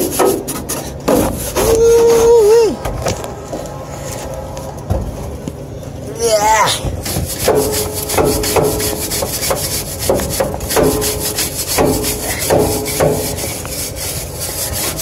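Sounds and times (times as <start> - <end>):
steady hum: 0.0 - 15.0
stiff brush scrubbing: 7.0 - 15.0.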